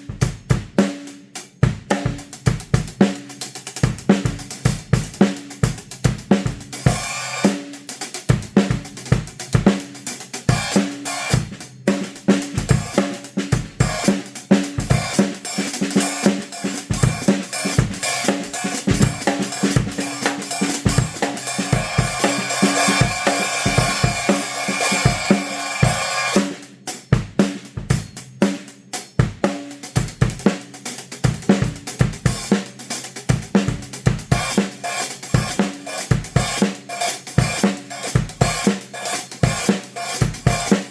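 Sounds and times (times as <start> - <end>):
drum kit playing a groove: 0.0 - 40.9
sustained cymbal wash: 6.9 - 7.6, 15.0 - 26.5.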